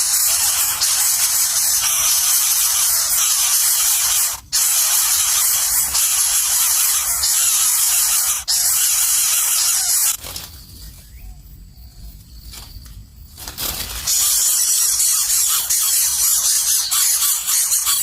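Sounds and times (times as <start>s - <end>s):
loud steady hiss: 0.0s - 10.2s.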